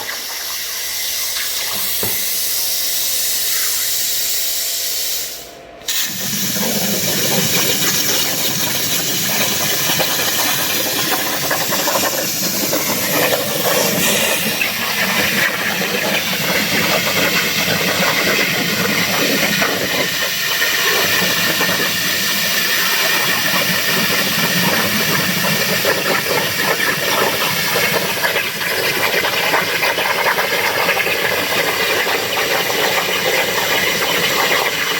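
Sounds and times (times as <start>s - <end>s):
plasma cutter hissing: 0.0s - 34.9s.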